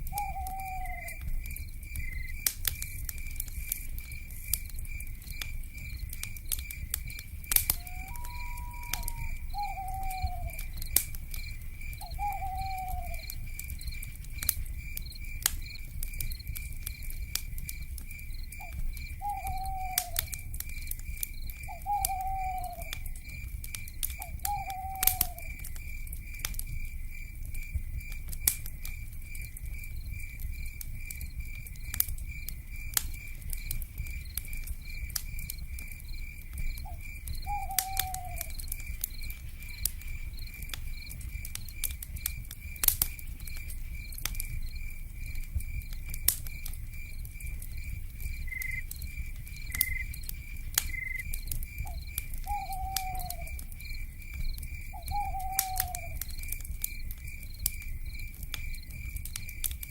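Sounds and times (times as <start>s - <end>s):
owl calling: 0.0s - 1.2s, 7.7s - 10.6s, 12.0s - 13.2s, 18.6s - 20.3s, 21.7s - 23.0s, 24.2s - 25.6s, 36.8s - 38.5s, 52.4s - 53.6s, 55.0s - 56.2s
fire crackling and popping: 0.0s - 59.9s
insects chirping: 0.0s - 59.9s.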